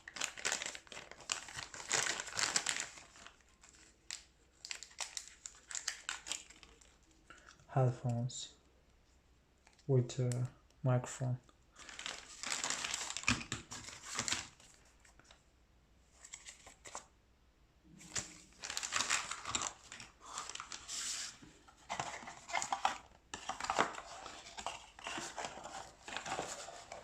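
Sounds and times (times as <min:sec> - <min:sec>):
plastic packaging crinkling: 0:00.0 - 0:07.6, 0:11.8 - 0:15.4, 0:18.0 - 0:27.0.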